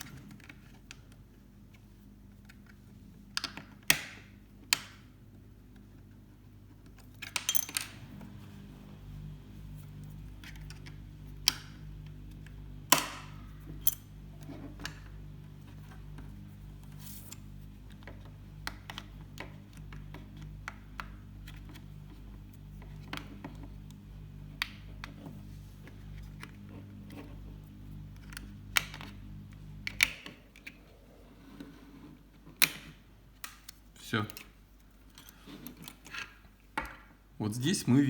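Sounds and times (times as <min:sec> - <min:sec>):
steady low hum: 0:07.6 - 0:35.8.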